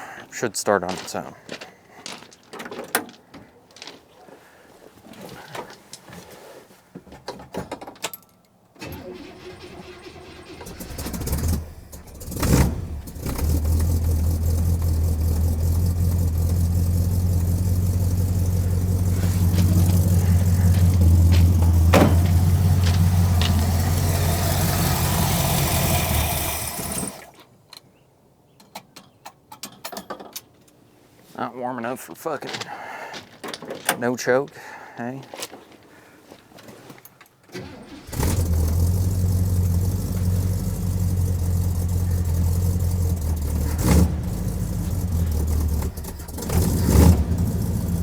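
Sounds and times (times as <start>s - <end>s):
car engine cranking: 8.8s - 27.4s, 37.5s - 48.0s
car engine running: 9.2s - 27.3s, 38.0s - 48.0s.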